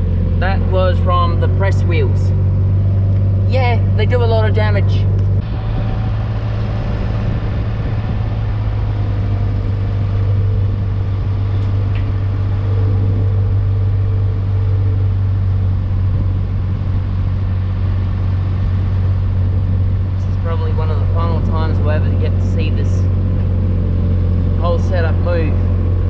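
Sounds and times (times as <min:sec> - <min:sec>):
utility vehicle engine humming: 0:00.0 - 0:26.0.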